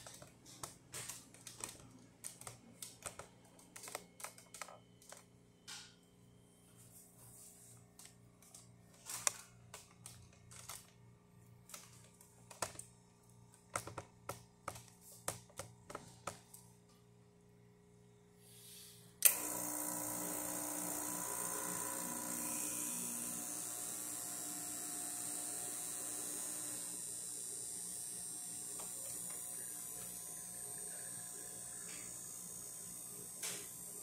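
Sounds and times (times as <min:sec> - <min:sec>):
vibratory pump buzzing: 0:19.2 - 0:34.0.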